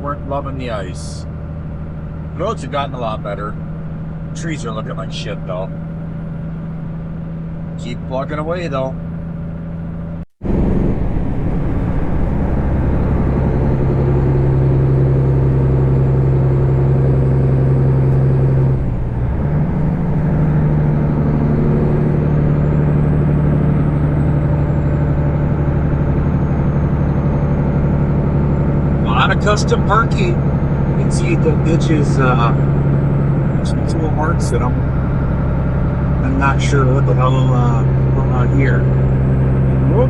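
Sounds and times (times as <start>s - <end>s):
truck diesel engine drone: 0.0s - 40.0s.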